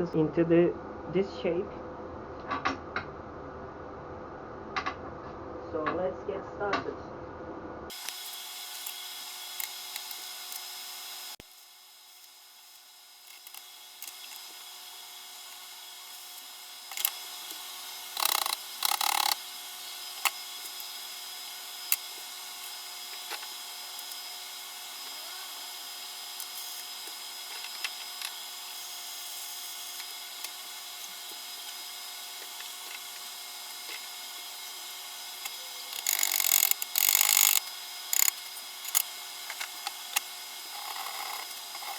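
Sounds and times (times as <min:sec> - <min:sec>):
electrical hum: 0:00.0 - 0:41.9
tack welding bursts: 0:07.9 - 0:41.9
small clicks: 0:18.2 - 0:19.4, 0:35.4 - 0:41.9.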